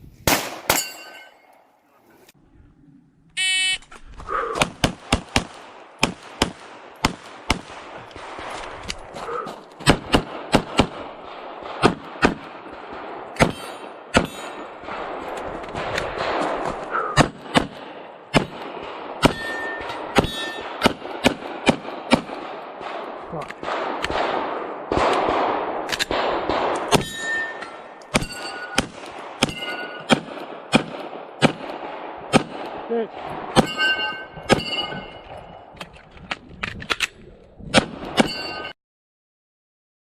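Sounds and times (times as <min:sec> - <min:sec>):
steel targets clanging: 0:00.6 - 0:01.6, 0:13.4 - 0:14.8, 0:19.2 - 0:20.8, 0:26.9 - 0:30.1, 0:33.5 - 0:35.8, 0:38.2 - 0:38.8
rapid pistol fire: 0:04.6 - 0:08.6, 0:09.8 - 0:13.2, 0:20.7 - 0:27.0, 0:28.1 - 0:33.7.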